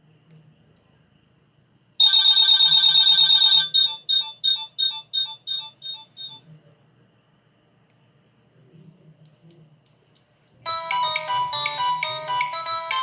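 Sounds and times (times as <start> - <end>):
mobile phone ringtone trill: 2.0 - 6.4, 10.7 - 13.0
short phone beeps: 3.4 - 6.5.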